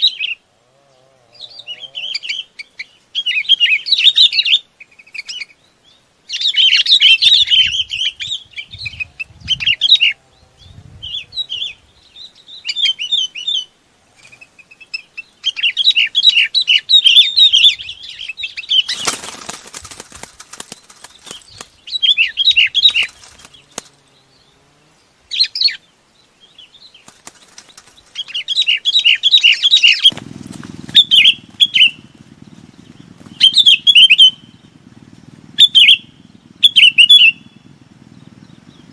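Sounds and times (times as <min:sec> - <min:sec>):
bulbuls chirping: 0:00.0 - 0:38.9
low steady hum: 0:04.9 - 0:38.9
noisy rustle: 0:13.8 - 0:16.8, 0:17.6 - 0:35.6.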